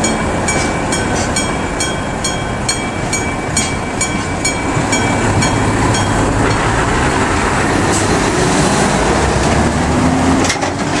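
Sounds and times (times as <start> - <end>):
crossing warning bell: 0.0 - 7.2
freight train rumbling past: 0.0 - 11.0
wheels clickety-clack: 3.6 - 11.0.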